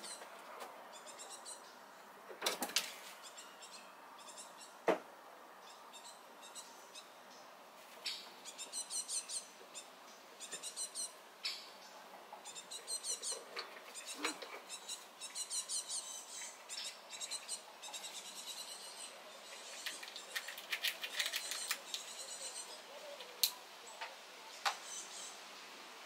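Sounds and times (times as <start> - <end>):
squirrel squeaking: 12.4 - 23.2.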